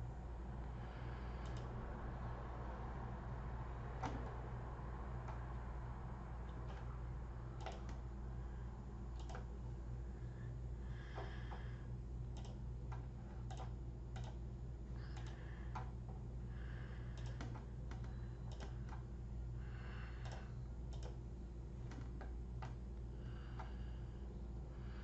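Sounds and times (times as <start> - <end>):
steady low hum: 0.0 - 25.0
mouse and keyboard clicking: 1.4 - 1.7, 7.6 - 8.0, 9.2 - 9.5, 12.3 - 14.4, 15.1 - 15.9, 17.1 - 19.0, 20.2 - 21.2.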